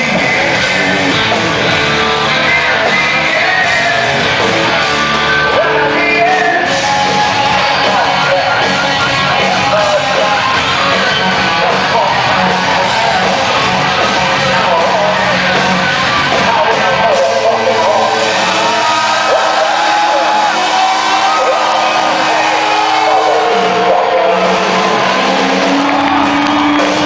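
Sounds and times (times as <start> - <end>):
person singing: 0.0 - 20.5
bass guitar: 0.0 - 27.0
distorted electric guitars: 0.0 - 27.0
drums: 0.0 - 27.0.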